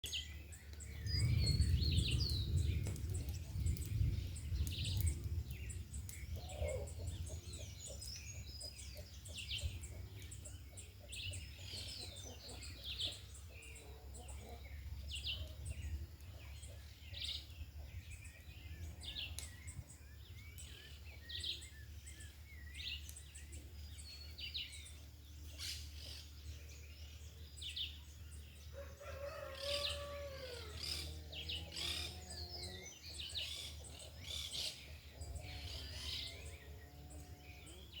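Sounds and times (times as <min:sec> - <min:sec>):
wind rumbling on microphone: 0:00.0 - 0:25.0
small birds chirping: 0:00.0 - 0:38.0.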